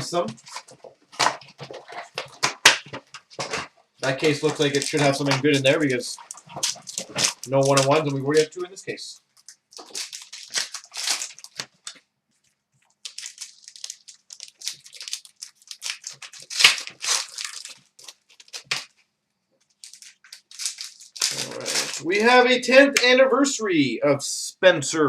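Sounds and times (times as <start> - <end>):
packaging tearing: 0.0 - 8.6, 9.4 - 12.0, 13.0 - 19.0, 19.7 - 22.4
wrappers crinkling: 0.0 - 22.5.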